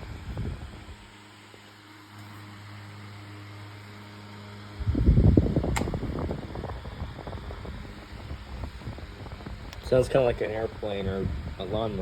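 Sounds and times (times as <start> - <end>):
air rumbling on microphone: 0.0 - 1.0, 4.8 - 12.0
table fan motor humming: 0.0 - 12.0
fan click: 4.9 - 12.0.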